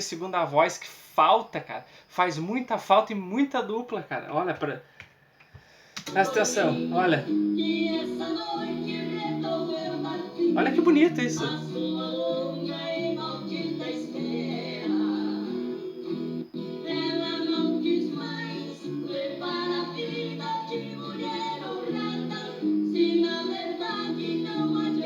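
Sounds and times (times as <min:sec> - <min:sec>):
duo singing in harmony: 0:06.1 - 0:25.0
instrumental backing: 0:06.1 - 0:25.0.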